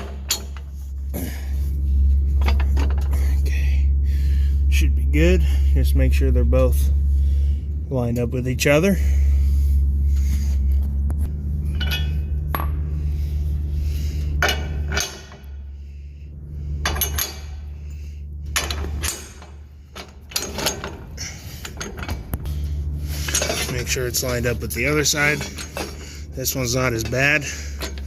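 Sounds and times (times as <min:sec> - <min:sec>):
steel lift arms clanking: 0:00.0 - 0:00.8, 0:14.3 - 0:15.6, 0:16.8 - 0:28.0
low electric hum: 0:00.0 - 0:28.0.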